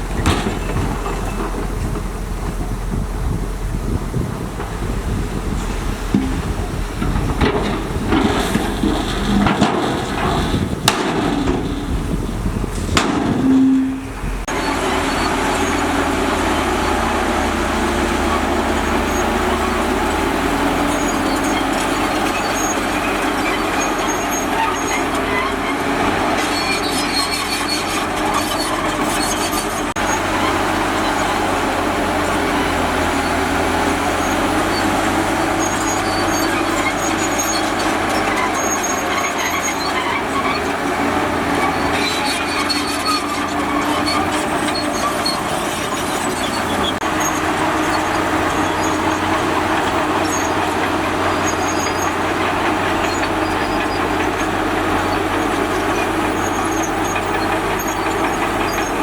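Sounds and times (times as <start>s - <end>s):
heavy machinery engine drone: 0.0s - 59.0s
knocks: 6.1s - 12.1s.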